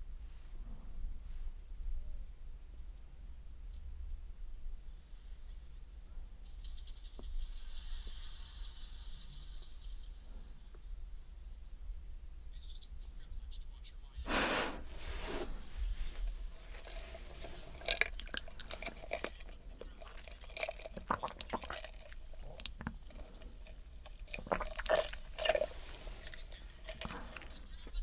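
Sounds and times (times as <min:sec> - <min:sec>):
loud breath: 0:14.3 - 0:15.9
wet mouth clicks: 0:16.9 - 0:27.5.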